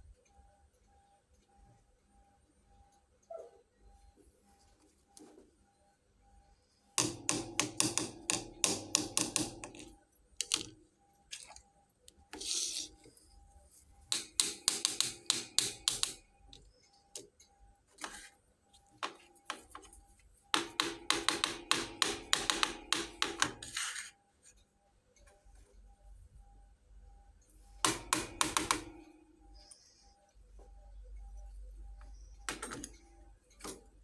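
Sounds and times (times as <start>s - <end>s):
toy pieces tapping and clicking: 14.2s - 16.7s.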